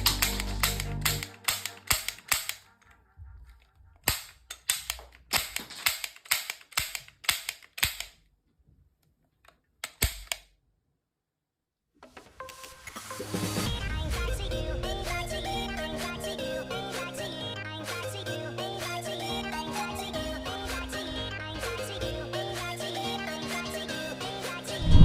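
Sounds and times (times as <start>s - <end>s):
toy revolver mechanism clicking: 0.1s - 2.7s, 4.1s - 8.2s, 9.8s - 10.5s.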